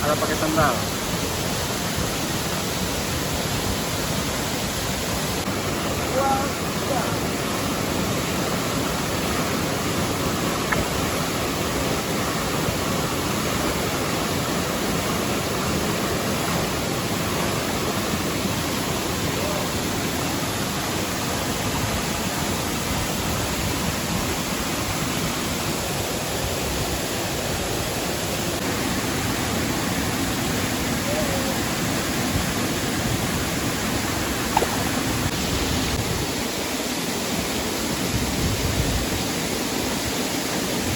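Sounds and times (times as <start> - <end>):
waterfall and stream rushing: 0.0 - 40.9.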